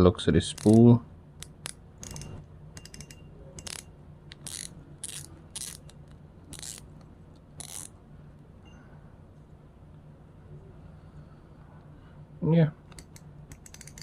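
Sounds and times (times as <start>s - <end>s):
fishing reel clicking and ratcheting: 0.6s - 0.8s, 1.4s - 5.9s, 6.5s - 6.8s, 7.6s - 7.9s, 13.0s - 14.0s.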